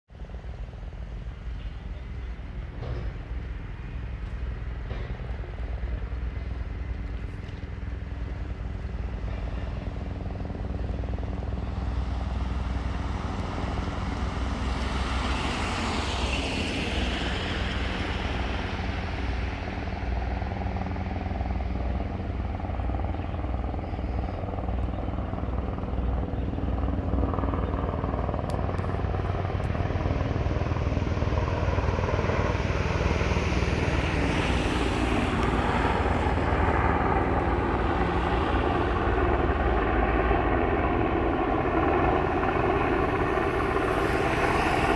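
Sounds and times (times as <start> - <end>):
helicopter turbine whine: 0.1 - 44.9
helicopter rotor thumping: 2.5 - 16.0, 24.4 - 44.9.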